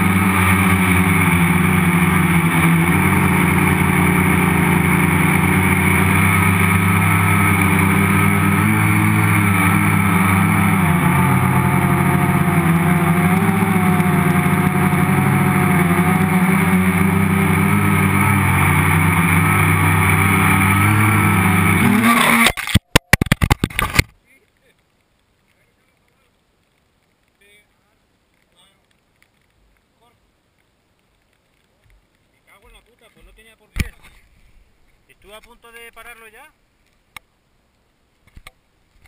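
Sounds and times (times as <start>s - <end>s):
drone motors and propellers: 0.0s - 22.8s.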